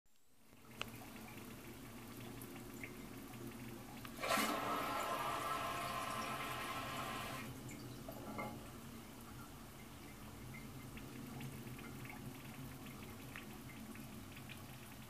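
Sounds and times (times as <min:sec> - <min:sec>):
toilet water hissing: 0:04.0 - 0:08.3.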